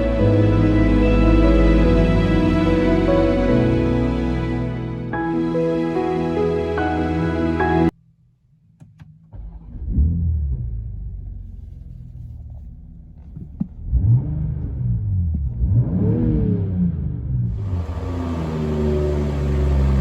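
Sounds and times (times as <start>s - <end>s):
car engine starting and revving: 9.3s - 20.0s.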